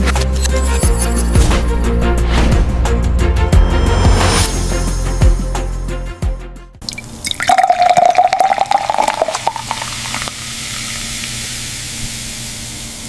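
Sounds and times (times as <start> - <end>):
running water splashing: 6.9 - 11.4.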